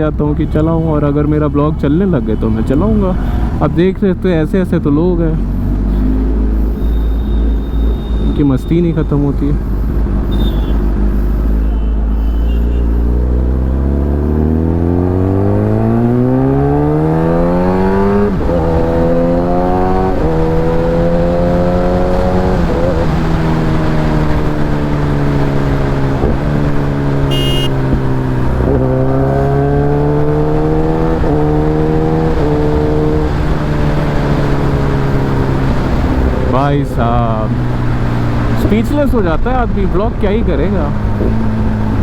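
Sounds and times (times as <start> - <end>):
motorcycle engine revving: 0.0 - 8.5, 9.1 - 42.0
short high-pitched beep: 27.3 - 27.8.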